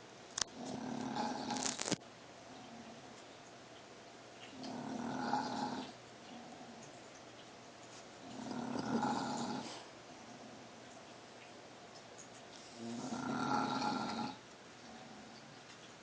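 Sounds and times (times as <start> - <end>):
dog snoring: 0.4 - 1.9, 4.5 - 6.8, 8.3 - 10.6, 12.8 - 15.4.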